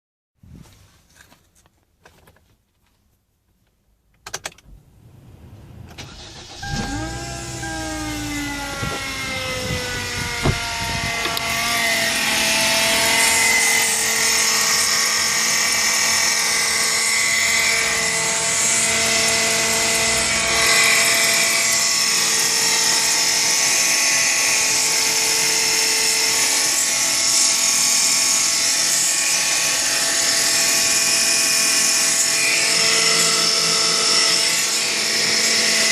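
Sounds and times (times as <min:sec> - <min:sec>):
car engine starting and idling: 0:04.2 - 0:11.8
high-pitched pulley whistle: 0:06.0 - 0:11.3.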